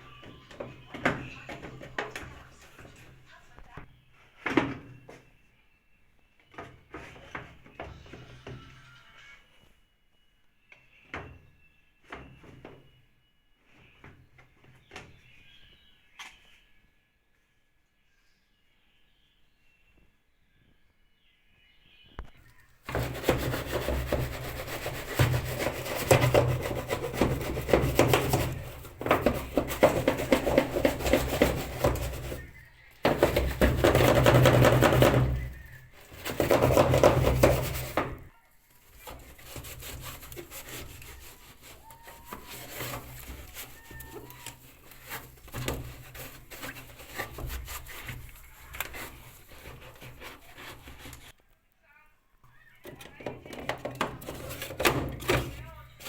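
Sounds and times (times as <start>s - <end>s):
hand scrubbing: 22.9s - 38.2s, 39.0s - 51.3s.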